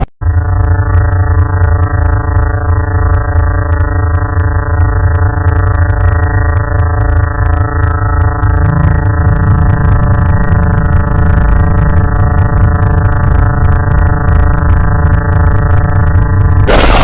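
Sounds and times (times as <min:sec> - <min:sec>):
electronic alarm drone: 0:00.0 - 0:17.0
heavy low rumble: 0:07.4 - 0:17.0.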